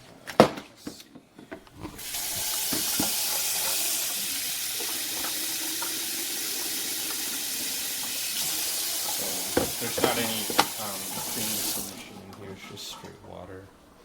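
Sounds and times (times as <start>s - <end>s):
tap water running into plastic tank: 2.0s - 12.0s.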